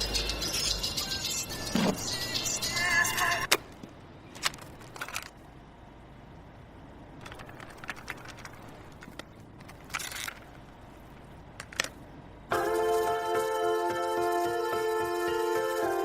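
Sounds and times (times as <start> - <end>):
low steady hum: 1.6 - 14.7
clicks and rustles: 3.5 - 5.5, 7.2 - 12.0.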